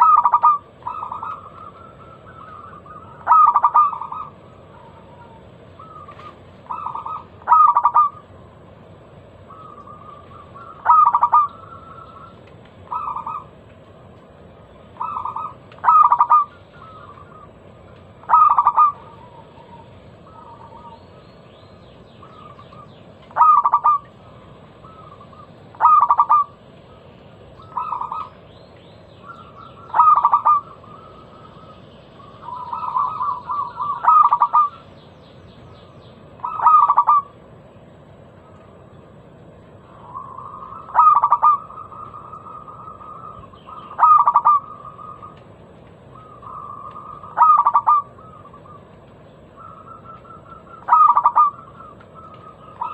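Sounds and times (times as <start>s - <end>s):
faint high bird chirping: 0.0s - 8.3s, 9.5s - 13.5s, 14.7s - 37.4s, 39.8s - 45.5s, 46.1s - 52.9s
dove cooing: 0.0s - 8.6s, 9.4s - 21.2s, 22.2s - 28.6s, 29.2s - 35.0s, 36.3s - 37.4s, 39.7s - 52.9s.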